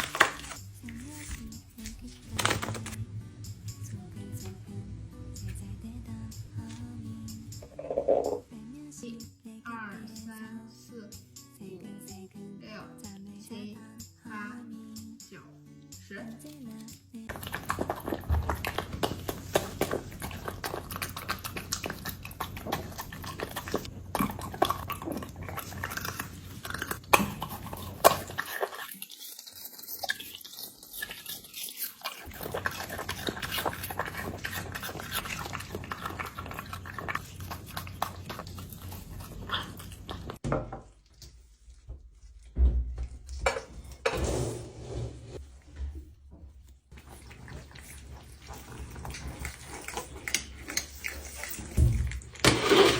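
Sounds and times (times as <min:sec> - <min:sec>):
dog chewing and crunching food: 0:00.0 - 0:04.6, 0:05.4 - 0:08.4, 0:16.4 - 0:42.6, 0:46.9 - 0:52.9.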